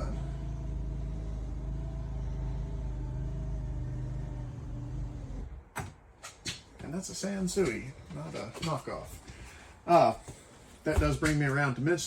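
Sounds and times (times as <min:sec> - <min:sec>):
electric lift motor humming: 0:00.0 - 0:05.7.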